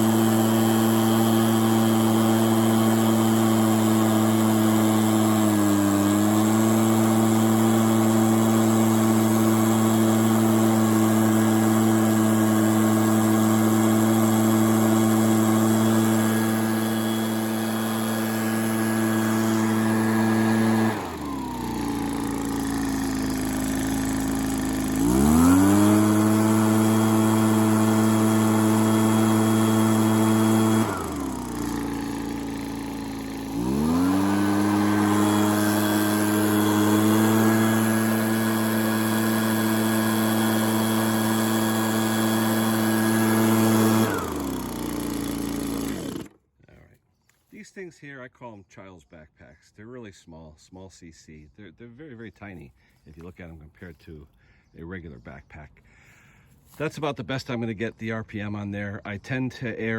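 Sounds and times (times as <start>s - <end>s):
leaf blower engine revving: 0.0s - 46.4s.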